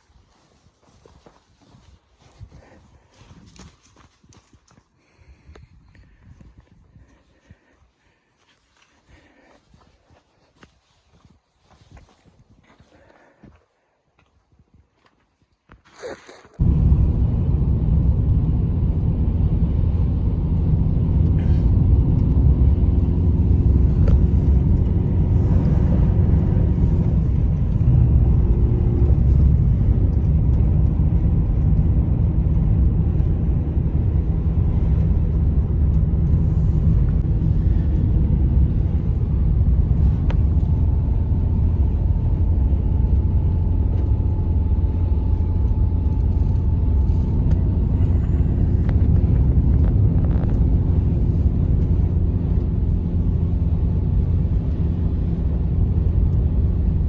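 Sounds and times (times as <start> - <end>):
faint humming tones: 16.2 - 57.0
loud low rumble: 16.6 - 57.0.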